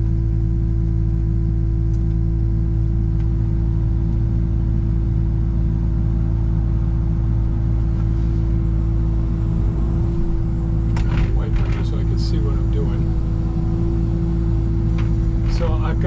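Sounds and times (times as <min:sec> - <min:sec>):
diesel engine humming: 0:00.0 - 0:16.0
steady tone: 0:03.7 - 0:16.0.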